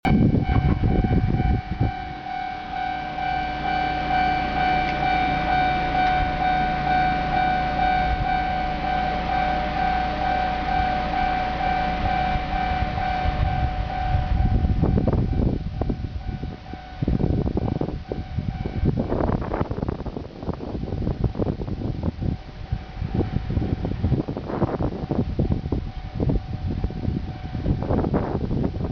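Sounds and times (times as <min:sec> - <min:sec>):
loud low rumble: 0:00.0 - 0:28.9
level crossing bell dinging: 0:00.1 - 0:15.6.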